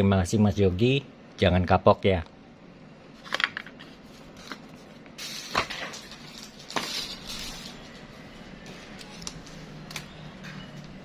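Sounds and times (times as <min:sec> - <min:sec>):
packaging rustling: 0:03.2 - 0:08.1.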